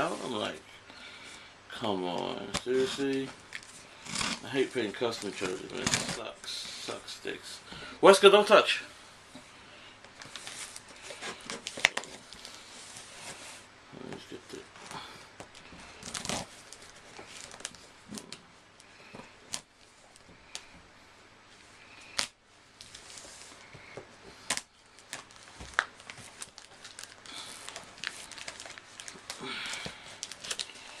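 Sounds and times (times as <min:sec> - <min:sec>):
paper crinkling and tearing: 0:16.0 - 0:18.3, 0:24.4 - 0:31.0.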